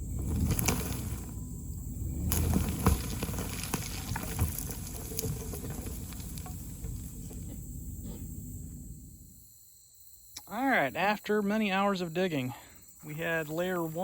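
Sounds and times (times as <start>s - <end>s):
knocks and crunches: 0.0s - 8.3s
vehicle engine running slowly: 0.0s - 9.2s.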